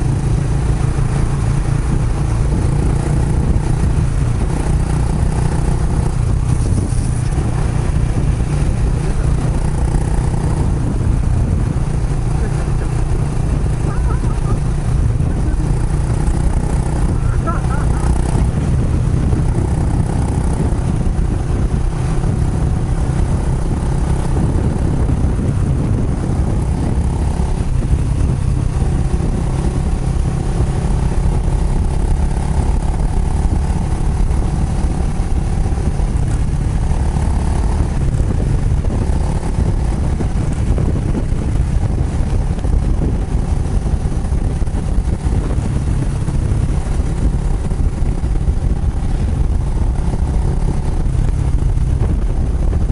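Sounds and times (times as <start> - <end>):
motorcycle engine running: 0.0 - 52.9.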